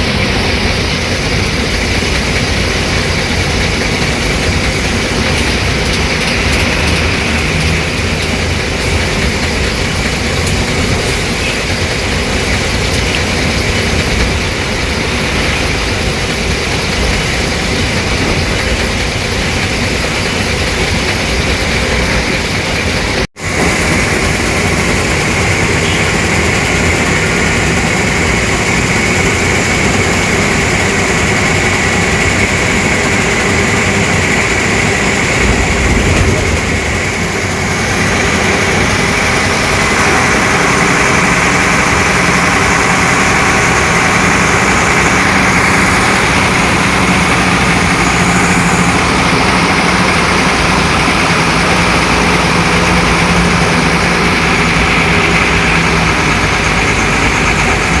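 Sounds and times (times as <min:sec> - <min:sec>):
diesel bus engine idling: 0:00.0 - 0:58.0.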